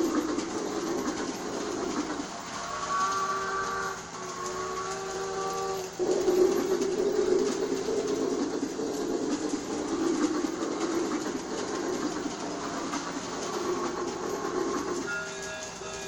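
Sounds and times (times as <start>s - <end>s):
toy train rumbling: 0.0s - 16.0s
toy train steam whistle: 1.6s - 7.5s, 13.5s - 16.0s.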